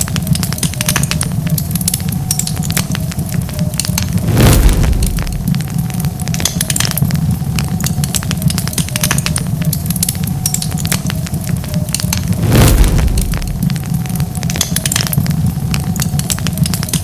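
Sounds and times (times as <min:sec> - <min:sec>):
wood fire crackling: 0:00.0 - 0:17.0
deep thump: 0:04.2 - 0:05.6, 0:12.4 - 0:13.8.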